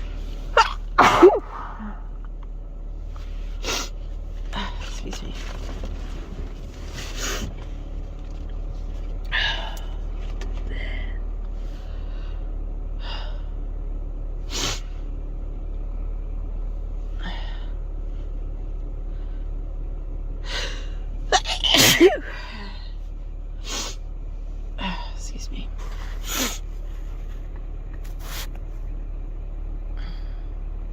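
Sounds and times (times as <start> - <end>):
car rumble: 0.0 - 30.9
person sneezing: 0.6 - 2.0, 21.3 - 22.7
person breathing: 1.5 - 2.2, 30.0 - 30.6.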